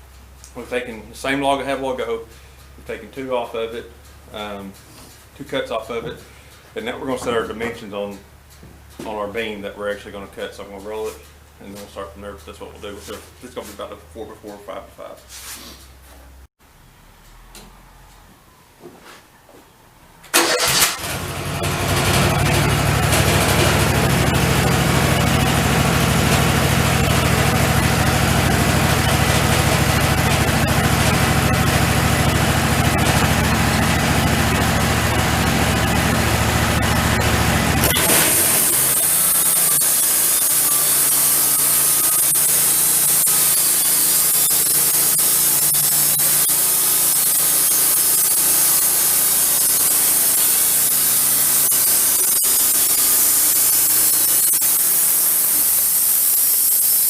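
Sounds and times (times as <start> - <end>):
sawmill engine running: 20.4 - 57.0.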